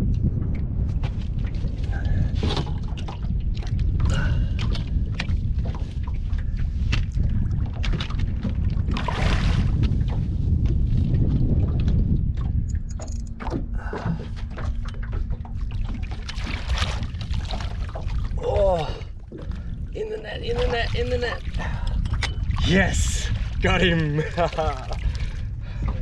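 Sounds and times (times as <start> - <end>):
wind buffeting microphone: 0.0 - 26.0
fishing tackle clicks and knocks: 11.8 - 15.6, 21.8 - 22.6.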